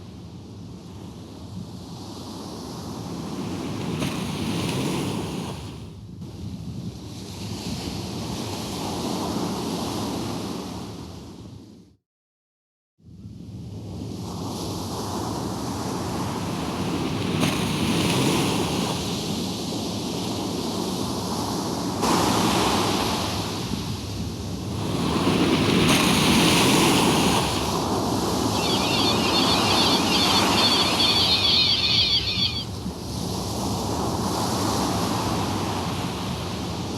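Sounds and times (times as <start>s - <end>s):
high warbling chirp: 28.4s - 32.7s.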